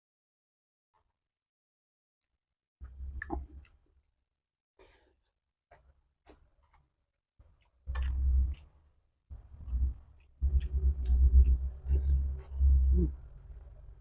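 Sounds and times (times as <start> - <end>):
chewing and mouth sounds: 2.8 - 4.1, 5.7 - 14.0.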